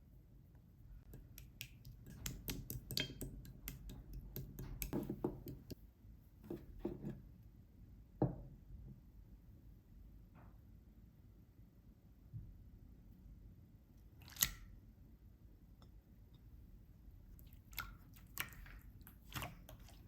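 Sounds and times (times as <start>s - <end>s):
slime squishes: 17.4s - 20.0s.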